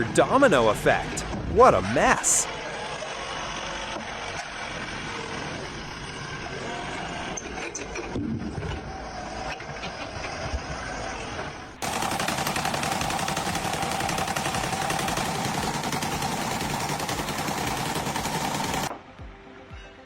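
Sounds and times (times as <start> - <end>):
constant whine: 0.0 - 19.0
fast mechanical rattle: 11.8 - 18.9.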